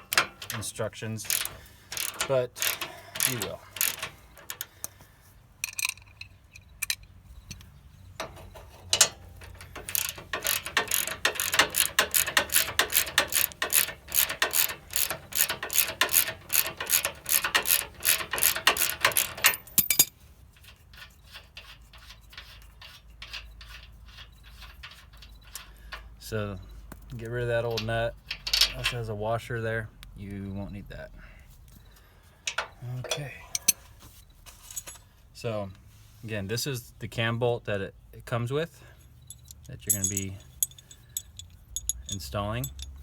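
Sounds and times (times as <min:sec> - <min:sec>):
ratchet wrench clicking: 0:00.0 - 0:04.7, 0:08.9 - 0:20.1, 0:39.3 - 0:43.0.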